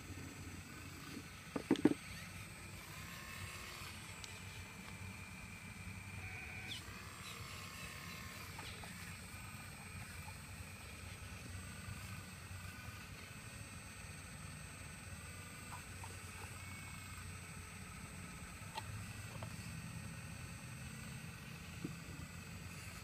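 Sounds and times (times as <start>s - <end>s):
engine running steadily: 0.0s - 23.0s
sharp knocks: 1.5s - 2.0s.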